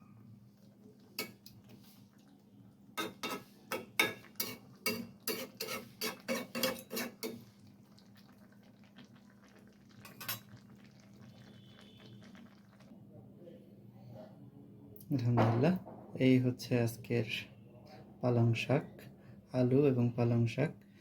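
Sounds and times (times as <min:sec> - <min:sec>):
metal spoon clinking on pot: 0:01.2 - 0:01.5, 0:03.0 - 0:07.4, 0:10.1 - 0:10.6.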